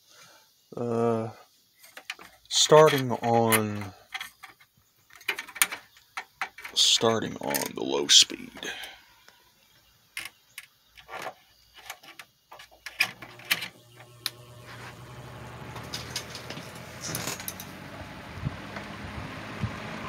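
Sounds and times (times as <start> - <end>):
fan motor hum and air noise: 13.1 - 20.0.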